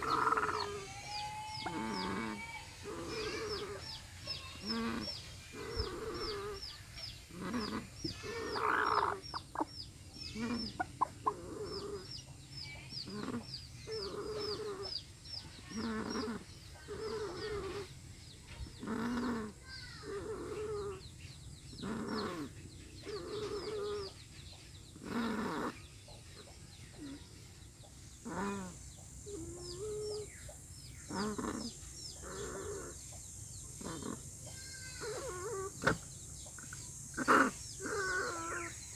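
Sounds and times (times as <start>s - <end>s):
chicken rasping calls: 0.0s - 9.7s, 31.1s - 38.9s.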